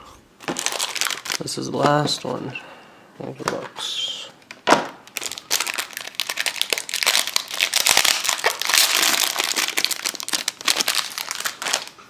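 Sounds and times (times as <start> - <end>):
foil wrapper crinkling: 0.4 - 2.3, 5.0 - 12.0.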